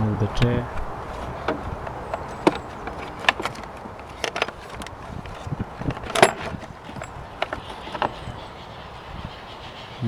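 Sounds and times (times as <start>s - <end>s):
plastic tray clicks and knocks: 0.9s - 8.4s.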